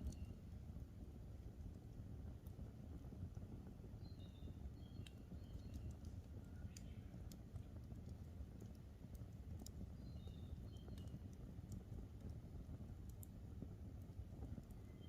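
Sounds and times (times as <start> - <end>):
campfire crackling and popping: 0.0 - 15.0
low steady rumble: 0.0 - 15.0
small bird chirping: 4.0 - 7.2, 10.0 - 11.2, 14.8 - 15.0.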